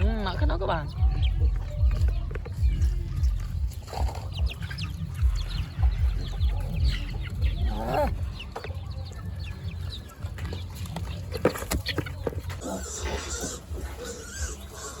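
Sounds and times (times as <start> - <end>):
steady low rumble: 0.0 - 10.8
chickens clucking: 0.0 - 15.0.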